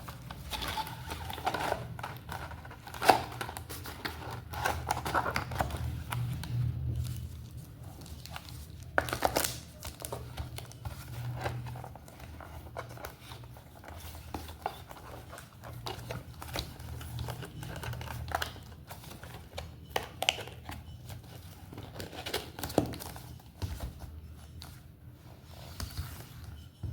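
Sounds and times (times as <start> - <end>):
plastic and cardboard crinkling: 0.0 - 26.9.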